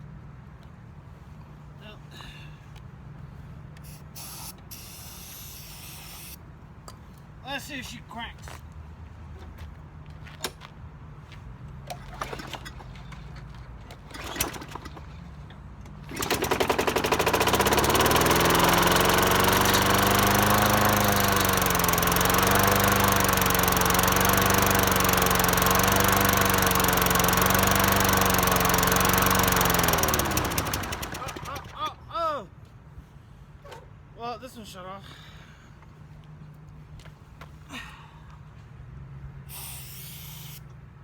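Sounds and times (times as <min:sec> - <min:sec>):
lawn mower engine running: 0:11.9 - 0:31.9.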